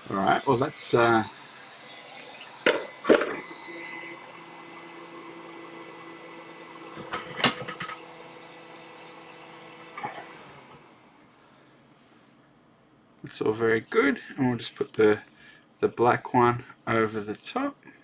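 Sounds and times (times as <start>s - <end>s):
hot air gun fan humming: 0.0s - 11.9s.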